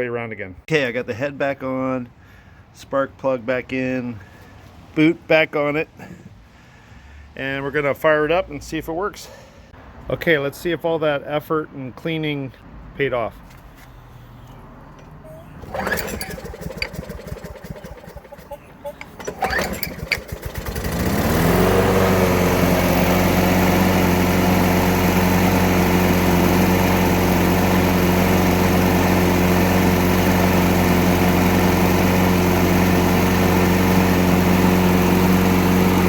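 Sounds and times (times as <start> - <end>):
lawn mower engine cranking and running: 14.9 - 36.0.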